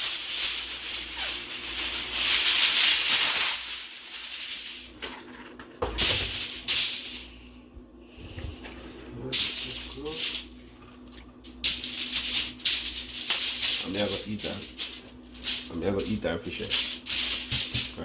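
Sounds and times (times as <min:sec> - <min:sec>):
shaking rustling noise: 0:00.0 - 0:07.4, 0:09.4 - 0:18.0.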